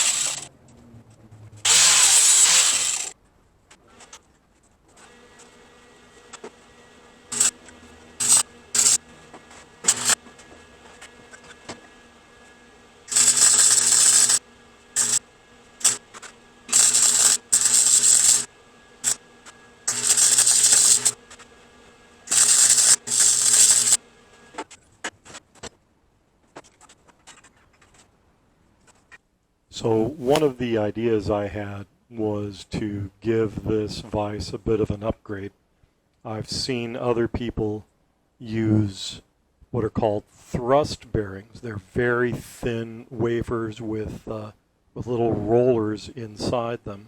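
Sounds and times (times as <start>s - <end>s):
arc welding crackling: 0.0s - 0.5s, 1.7s - 3.2s, 7.3s - 7.6s, 8.2s - 9.0s, 9.8s - 10.2s, 13.1s - 15.2s, 15.8s - 19.2s, 19.9s - 21.4s, 22.3s - 24.0s
welder hum: 0.0s - 0.5s, 1.7s - 3.2s, 5.4s - 11.8s, 12.4s - 24.6s.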